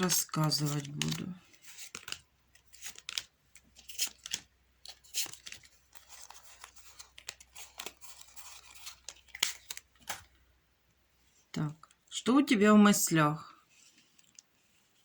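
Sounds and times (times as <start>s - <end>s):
cards sliding: 0.1s - 10.4s
playing cards snapping and flicking: 8.9s - 10.3s.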